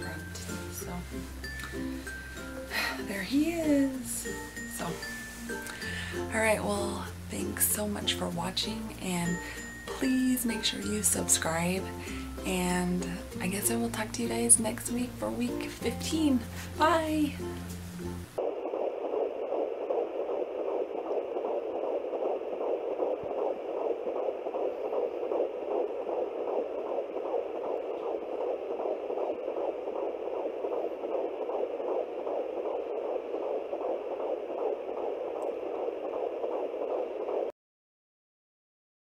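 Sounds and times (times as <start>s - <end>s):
fetal heartbeat on doppler: 0.0s - 37.5s
steady hiss: 0.0s - 37.5s.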